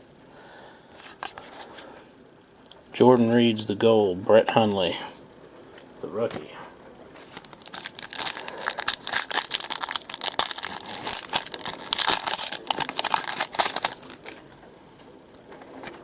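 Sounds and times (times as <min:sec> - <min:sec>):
wrapper tearing and crinkling: 0:07.2 - 0:14.4.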